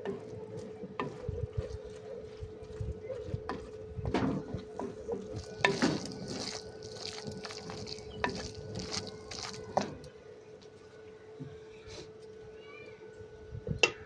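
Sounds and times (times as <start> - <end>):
steady low hum: 0.0 - 14.0
light sizzle: 5.3 - 10.1.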